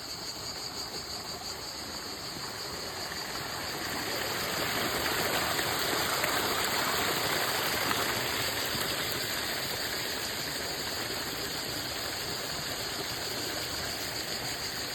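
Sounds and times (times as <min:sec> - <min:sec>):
running water flowing: 0:01.8 - 0:14.9.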